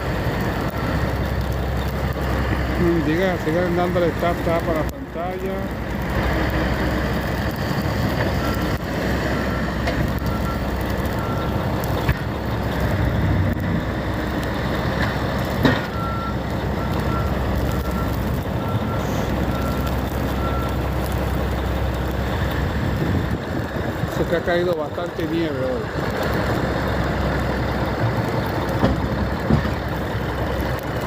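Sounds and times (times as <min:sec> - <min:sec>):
vehicle back-up alarm beeping: 0:00.0 - 0:02.1, 0:02.7 - 0:05.8, 0:06.4 - 0:13.2, 0:13.8 - 0:22.0
steady engine rumble: 0:00.0 - 0:31.0.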